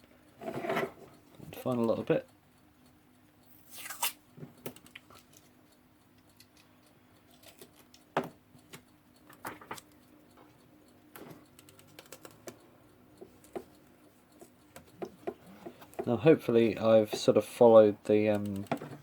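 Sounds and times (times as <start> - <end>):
fingers tapping on tape: 11.1 - 19.0.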